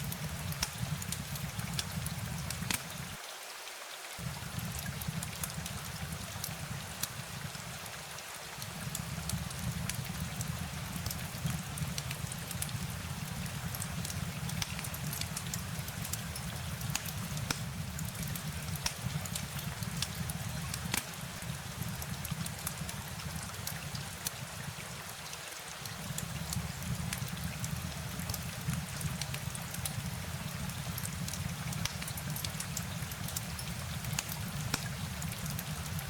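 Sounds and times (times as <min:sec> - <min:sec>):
constant low rumble: 0:00.0 - 0:03.2, 0:04.2 - 0:07.9, 0:08.6 - 0:24.8
drop ticks: 0:00.0 - 0:03.2, 0:13.7 - 0:24.4, 0:25.9 - 0:36.0
steady rain falling: 0:00.0 - 0:36.0.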